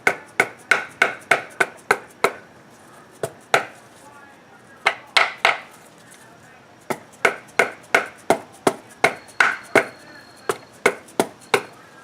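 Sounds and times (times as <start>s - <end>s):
hammer tapping on metal: 4.9s - 5.7s, 6.9s - 11.7s.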